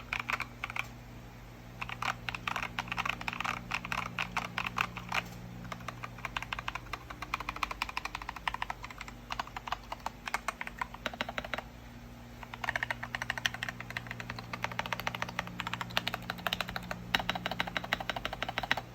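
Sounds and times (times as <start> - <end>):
mechanical keyboard typing: 0.0 - 0.9, 1.8 - 11.7, 12.4 - 18.9.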